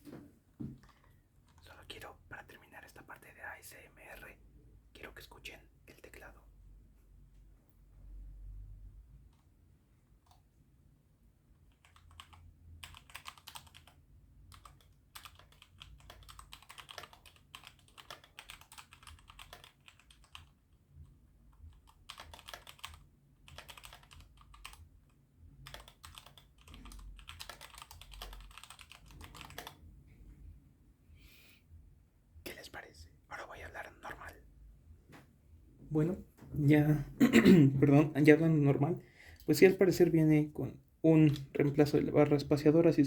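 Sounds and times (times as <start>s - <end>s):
mechanical keyboard typing: 11.7s - 20.6s, 21.5s - 29.8s.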